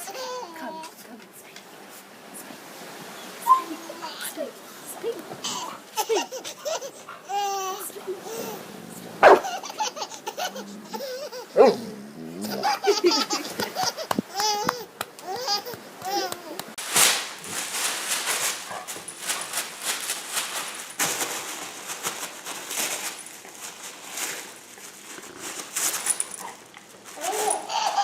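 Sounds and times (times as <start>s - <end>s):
baby laughing and squealing: 0.0s - 0.8s, 5.4s - 11.8s, 12.4s - 16.8s, 27.2s - 28.0s
quick noisy scuffling: 16.8s - 28.0s.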